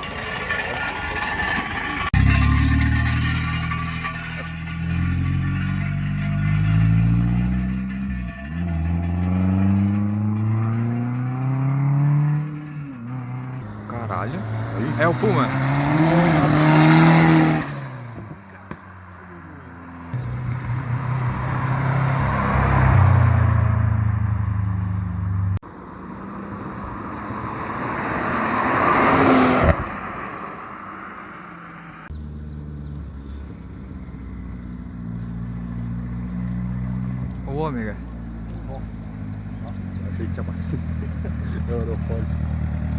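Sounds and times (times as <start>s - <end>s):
cars revving past: 2.1s - 42.9s
low engine rumble: 36.9s - 42.9s.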